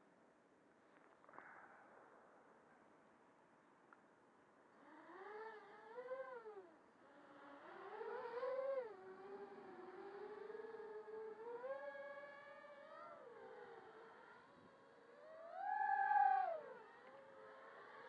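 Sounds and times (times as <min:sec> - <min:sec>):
quadcopter motors whining: 0:04.7 - 0:18.0.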